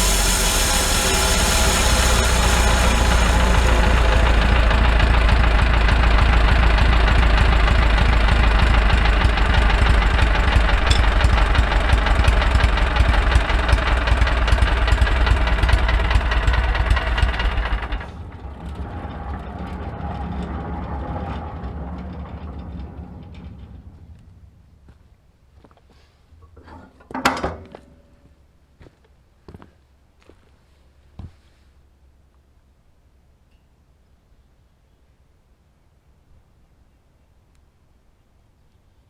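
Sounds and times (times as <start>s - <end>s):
saw cutting log: 0.0s - 18.9s
sawmill engine rumble: 0.0s - 25.1s.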